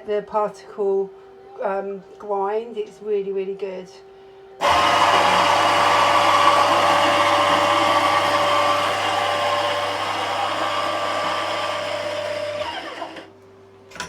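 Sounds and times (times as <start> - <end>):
coffee grinder grinding beans: 4.6 - 13.3.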